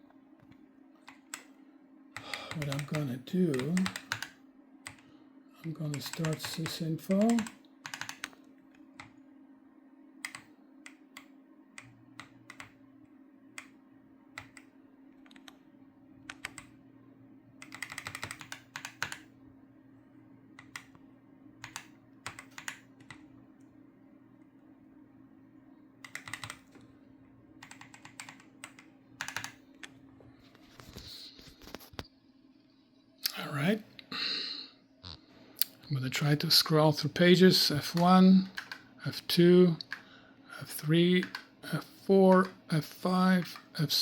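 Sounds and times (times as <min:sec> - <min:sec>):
steady low hum: 0:00.0 - 0:44.0
mechanical keyboard typing: 0:02.2 - 0:05.0, 0:05.6 - 0:08.4, 0:10.2 - 0:12.8, 0:14.4 - 0:15.6, 0:16.3 - 0:16.7, 0:17.6 - 0:19.2, 0:21.6 - 0:23.2, 0:26.0 - 0:26.8, 0:27.6 - 0:29.6, 0:38.0 - 0:38.8, 0:41.2 - 0:41.4.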